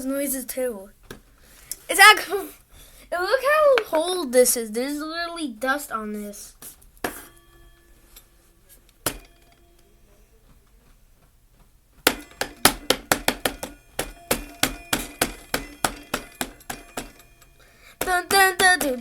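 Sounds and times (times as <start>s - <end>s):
fast clinking strikes: 7.0s - 11.0s, 12.0s - 19.0s
clock metallic strikes: 7.0s - 11.2s, 12.0s - 19.0s.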